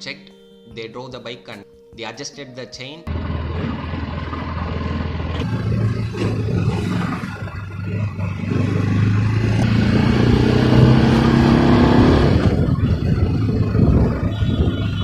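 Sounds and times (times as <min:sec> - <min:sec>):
motorcycle engine revving: 0:03.1 - 0:15.0.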